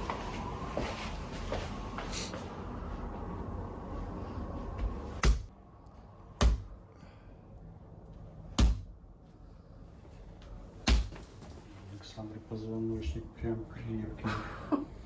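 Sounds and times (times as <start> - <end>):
mallet thudding on back: 5.2 - 5.5, 6.4 - 6.8, 8.6 - 9.0, 10.8 - 11.2.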